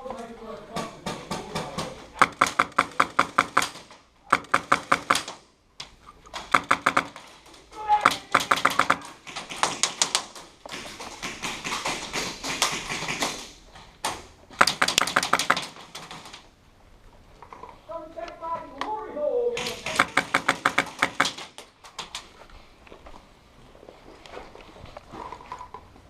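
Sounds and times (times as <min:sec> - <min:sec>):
airsoft guns firing: 0:01.0 - 0:05.4, 0:06.4 - 0:16.4, 0:19.6 - 0:22.1.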